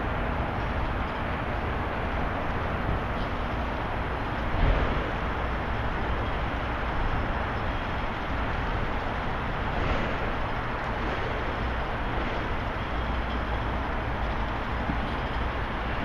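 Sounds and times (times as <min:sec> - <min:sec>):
distant road traffic: 0:00.0 - 0:16.0
wind buffeting microphone: 0:00.0 - 0:16.0.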